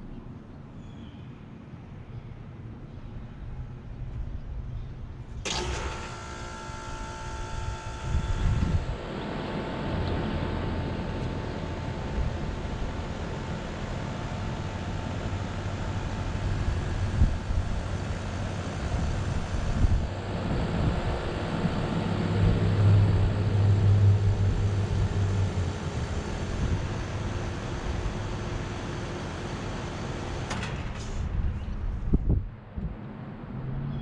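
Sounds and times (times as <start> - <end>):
air conditioner fan noise: 0.0 - 33.9
compressor hum: 5.3 - 30.6.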